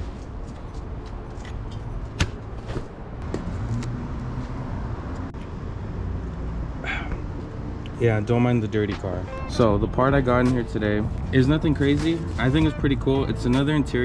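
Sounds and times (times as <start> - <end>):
car engine humming: 9.3 - 14.0.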